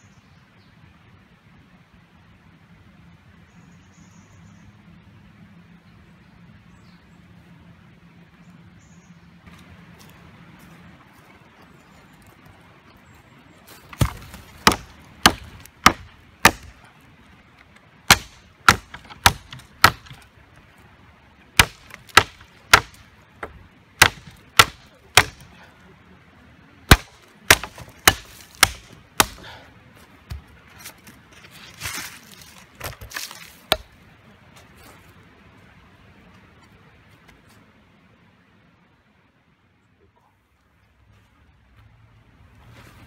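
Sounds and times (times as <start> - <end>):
pegs hammered into ground: 13.9 - 16.8, 18.1 - 20.3, 21.6 - 25.5, 26.9 - 29.6.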